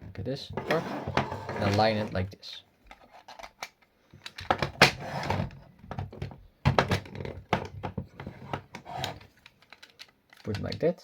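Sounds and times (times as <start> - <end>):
plastic parts clicking and knocking: 2.8 - 11.0.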